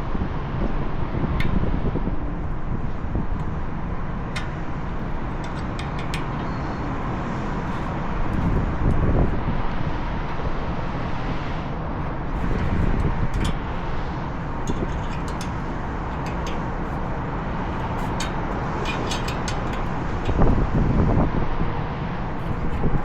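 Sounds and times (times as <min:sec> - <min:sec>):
rooftop equipment running: 0:00.0 - 0:23.0
wind: 0:00.0 - 0:23.0
hand tools clinking on metal: 0:14.6 - 0:17.0, 0:17.7 - 0:20.4.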